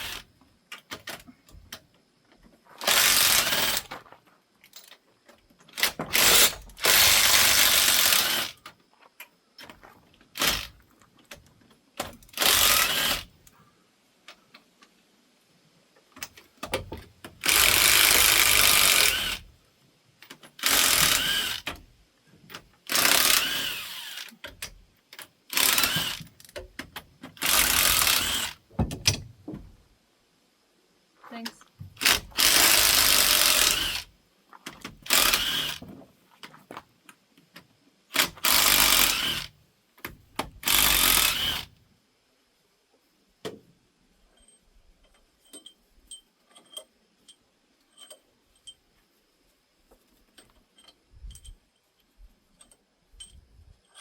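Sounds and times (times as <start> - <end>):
power tool bursts: 0.0 - 0.3, 2.8 - 3.9, 5.8 - 8.6, 10.4 - 10.8, 12.3 - 13.3, 17.4 - 19.5, 20.6 - 21.8, 22.9 - 24.3, 25.5 - 26.3, 27.4 - 28.6, 32.0 - 34.1, 35.0 - 35.8, 38.1 - 39.6, 40.6 - 41.8
hand tools clinking: 44.3 - 48.9.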